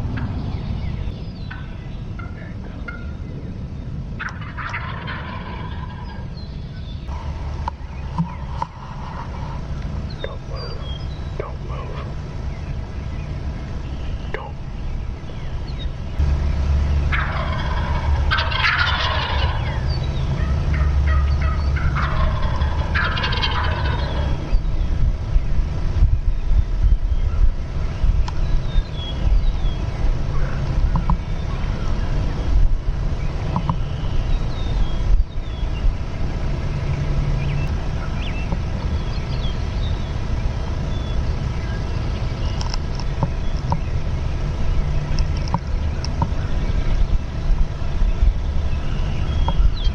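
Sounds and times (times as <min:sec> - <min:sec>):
low steady rumble: 0:00.0 - 0:49.9
small birds chirping: 0:00.0 - 0:49.9
wind buffeting microphone: 0:00.0 - 0:49.9
turkeys gobbling: 0:01.5 - 0:03.2, 0:04.2 - 0:06.3, 0:07.1 - 0:24.6.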